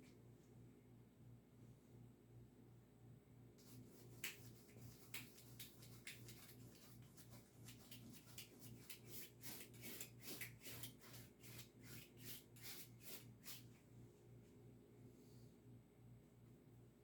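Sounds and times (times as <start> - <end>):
faint low hum: 0.0 - 17.0
paintbrush scratching on canvas: 3.6 - 13.6.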